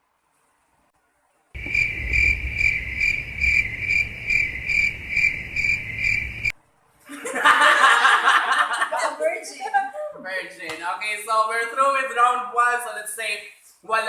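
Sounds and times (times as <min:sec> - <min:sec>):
low rumble: 0:01.6 - 0:06.5
crickets chirping: 0:01.6 - 0:06.6.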